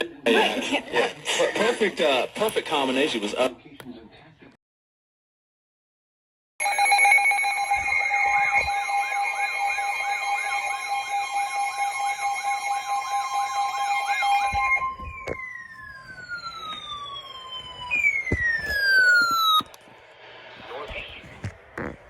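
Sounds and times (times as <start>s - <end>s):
siren-like warble: 6.6s - 19.8s
two-tone alarm: 6.6s - 19.8s.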